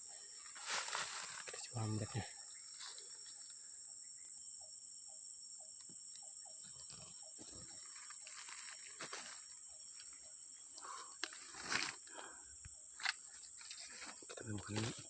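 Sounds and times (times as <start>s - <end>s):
insect drone: 0.0s - 15.0s
footsteps through leaf litter: 0.5s - 1.7s.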